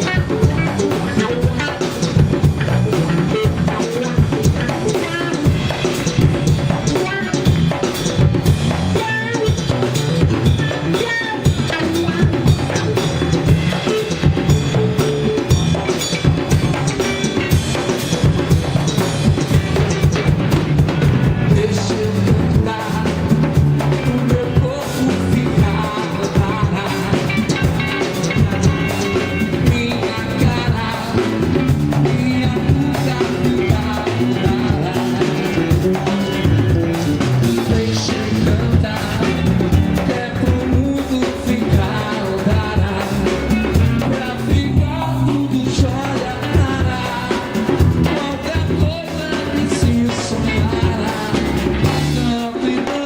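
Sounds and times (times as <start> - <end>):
low bass notes: 0.0 - 52.4
drum kit beat: 0.0 - 53.0
live band playing upbeat song: 0.0 - 53.0.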